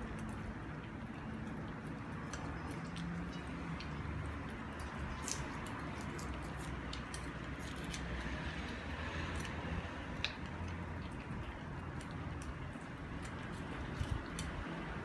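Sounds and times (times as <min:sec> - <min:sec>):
dog chewing food: 0:00.0 - 0:15.0.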